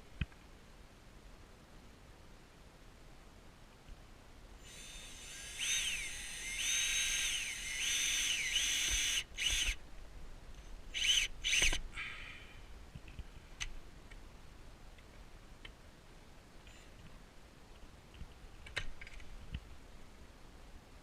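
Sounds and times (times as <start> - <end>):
power drill motor whine: 4.6 - 9.8, 11.0 - 11.8.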